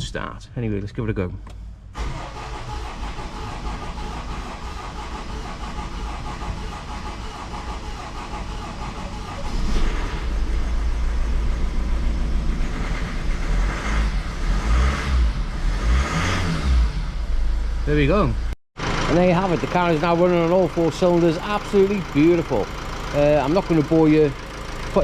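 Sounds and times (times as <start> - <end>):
starter cranking engine: 2.0 - 11.4, 18.8 - 25.0
diesel engine running and revving: 2.0 - 25.0.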